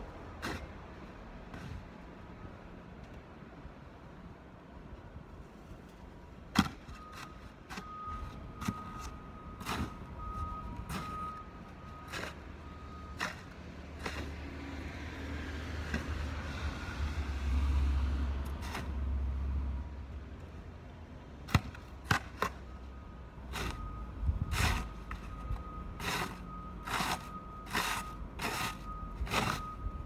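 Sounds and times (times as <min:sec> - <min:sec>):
snow shovel scraping pavement: 0:00.4 - 0:00.8, 0:12.0 - 0:12.4, 0:13.1 - 0:14.4, 0:26.0 - 0:29.8
passing vehicle engine rumble: 0:07.9 - 0:30.0.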